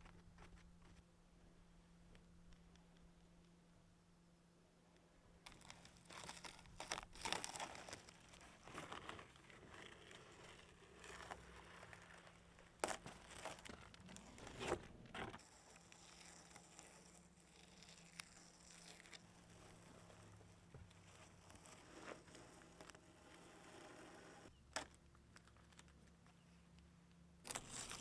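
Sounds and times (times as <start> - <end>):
faint low hum: 0.0 - 28.0
crinkling and rustling handling: 5.4 - 23.2, 24.4 - 28.0.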